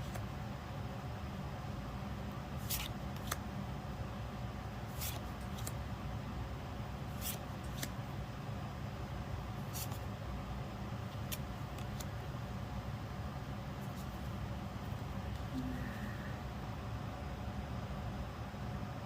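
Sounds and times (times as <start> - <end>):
steady low hum: 0.0 - 19.0
trading cards sliding swishes: 2.6 - 3.4, 4.9 - 5.8, 7.1 - 8.0, 9.6 - 10.1, 11.1 - 12.1.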